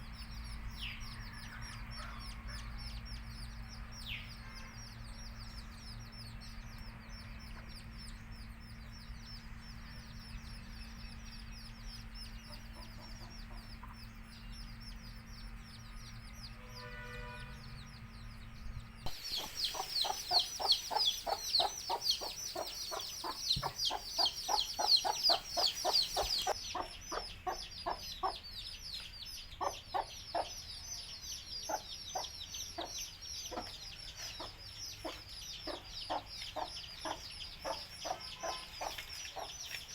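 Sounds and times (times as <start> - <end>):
chicks peeping: 0.0 - 16.6, 17.4 - 39.9
hen clucking: 12.4 - 14.1, 19.1 - 28.4, 34.4 - 39.8.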